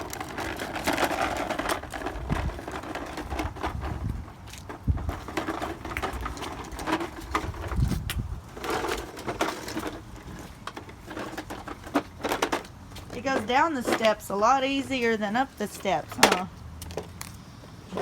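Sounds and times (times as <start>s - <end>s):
bicycle bumping down steps: 0.0s - 17.2s
wind buffeting microphone: 1.8s - 9.0s.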